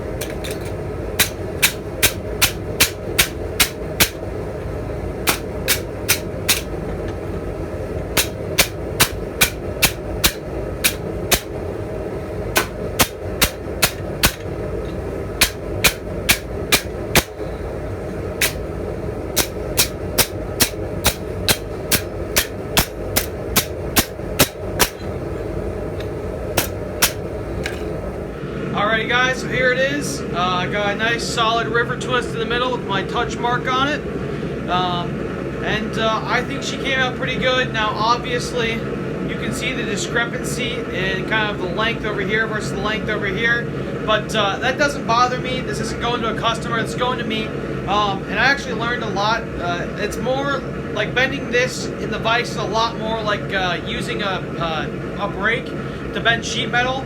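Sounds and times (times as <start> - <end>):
steady rushing noise: 0.0 - 28.7
hammer striking iron on anvil: 0.2 - 4.3, 5.3 - 6.8, 8.2 - 11.6, 12.6 - 14.6, 15.4 - 17.5, 18.4 - 18.7, 19.4 - 25.1, 26.6 - 27.9.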